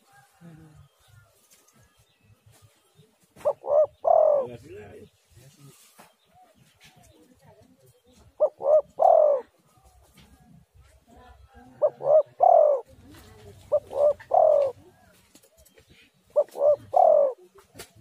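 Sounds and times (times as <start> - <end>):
dove cooing: 3.4 - 5.1, 8.1 - 10.4, 11.4 - 15.2, 15.9 - 17.9.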